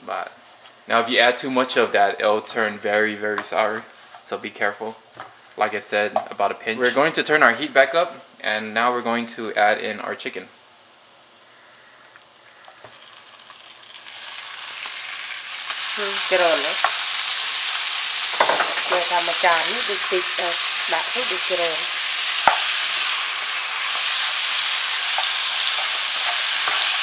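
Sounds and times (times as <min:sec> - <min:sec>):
chicken sizzling in hot oil: 0:12.2 - 0:27.0.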